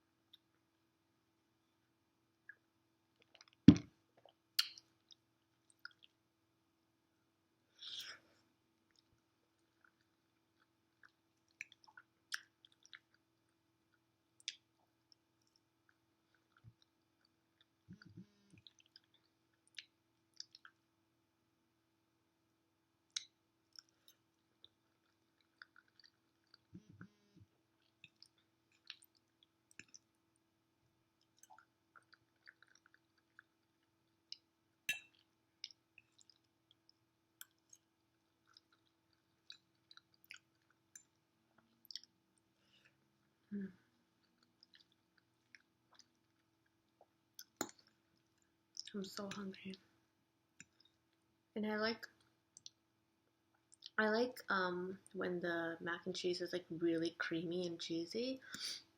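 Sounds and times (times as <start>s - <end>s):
close-up chewing: 4.2s - 6.2s, 8.8s - 20.8s, 23.1s - 30.2s, 31.2s - 49.4s.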